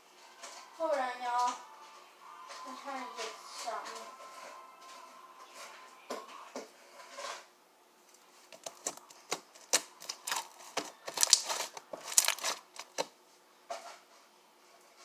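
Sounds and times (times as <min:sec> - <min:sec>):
handling clicks and crackles: 0:08.5 - 0:13.1.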